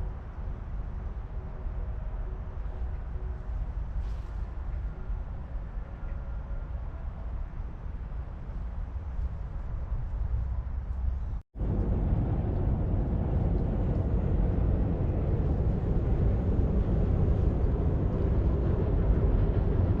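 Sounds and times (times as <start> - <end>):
low outdoor rumbling: 0.0 - 20.0.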